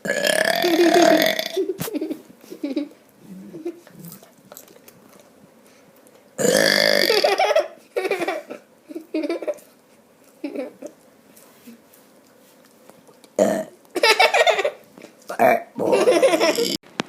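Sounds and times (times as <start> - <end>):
boy burping: 0.0 - 1.7, 6.4 - 7.3, 13.4 - 13.7, 15.4 - 16.8.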